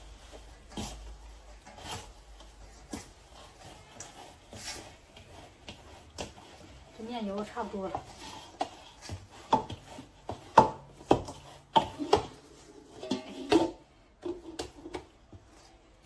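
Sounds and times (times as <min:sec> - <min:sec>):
utensil knocking mixing bowl: 0:00.0 - 0:15.4.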